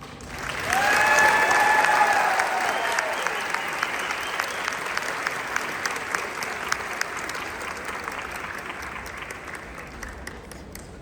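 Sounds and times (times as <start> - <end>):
audience applause: 0.2 - 11.0.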